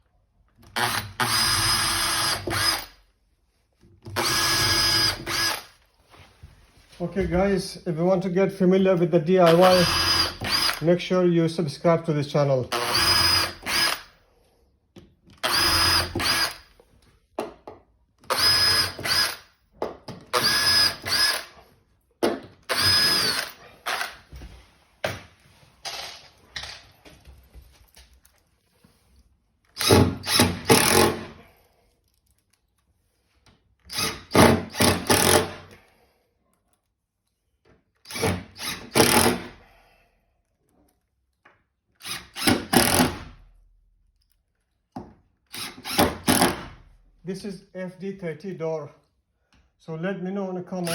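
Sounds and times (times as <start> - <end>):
power drill whining: 0.6 - 3.0, 4.1 - 5.8, 9.5 - 10.9, 12.7 - 14.2, 15.3 - 16.8, 18.2 - 19.5, 20.3 - 21.7, 22.6 - 24.4, 29.7 - 31.5, 33.8 - 35.8, 38.0 - 39.7, 42.0 - 43.4, 45.5 - 46.8.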